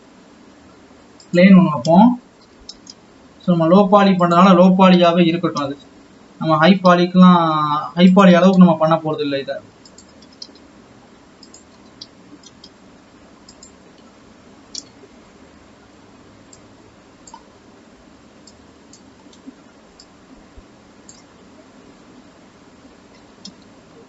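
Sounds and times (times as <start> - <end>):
low room hum: 0.0 - 24.0
computer mouse clicks: 2.4 - 3.0, 9.8 - 10.7, 11.4 - 12.8, 13.4 - 14.1, 14.7 - 15.0, 16.5 - 17.5, 18.4 - 20.1, 21.1 - 21.4, 23.1 - 23.7.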